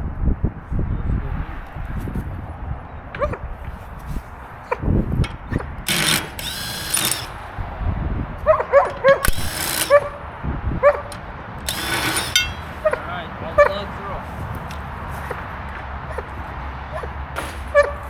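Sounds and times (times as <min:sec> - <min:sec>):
impact wrench loosening lug nuts: 0:05.9 - 0:07.6, 0:09.0 - 0:10.2, 0:11.1 - 0:13.0.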